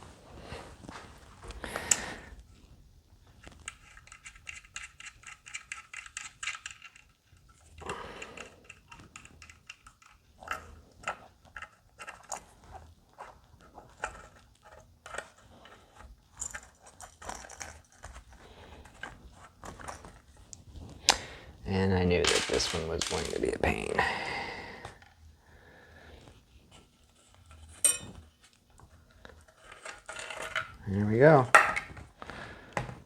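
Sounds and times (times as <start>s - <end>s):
small clicks and metallic rattles: 3.4s - 12.9s, 13.9s - 21.2s.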